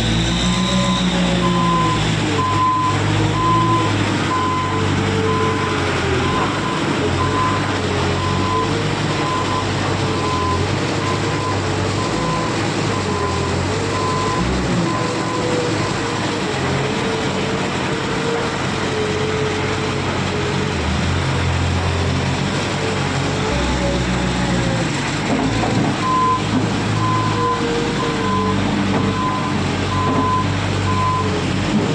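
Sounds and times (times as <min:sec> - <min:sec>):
loader engine running with whine: 0:00.0 - 0:31.9.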